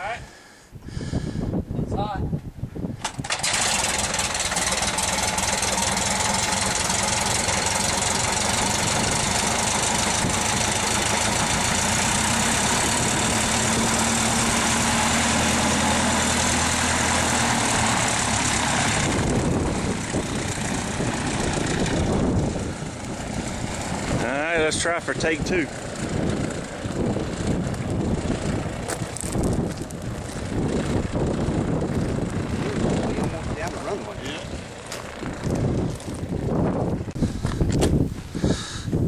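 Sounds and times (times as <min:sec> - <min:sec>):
light aircraft engine and propeller: 0:03.0 - 0:38.8.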